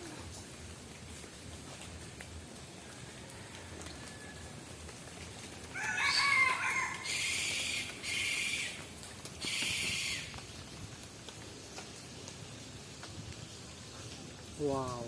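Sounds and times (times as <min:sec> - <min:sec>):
rooster crowing: 0:02.9 - 0:04.6, 0:05.7 - 0:07.4.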